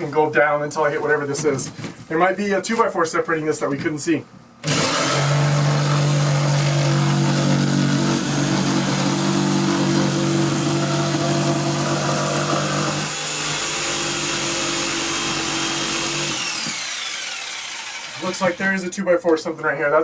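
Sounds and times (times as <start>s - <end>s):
electric jigsaw cutting: 4.6s - 18.8s.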